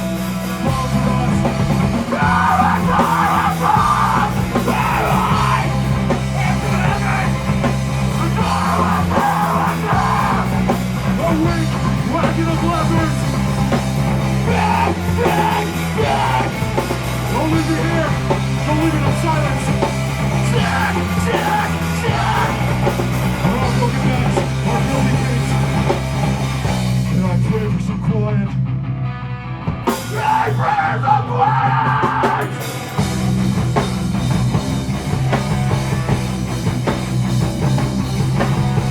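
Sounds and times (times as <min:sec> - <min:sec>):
punk band playing live: 0:00.0 - 0:38.9
shouted vocals: 0:00.7 - 0:13.3, 0:14.4 - 0:25.7, 0:30.0 - 0:32.8.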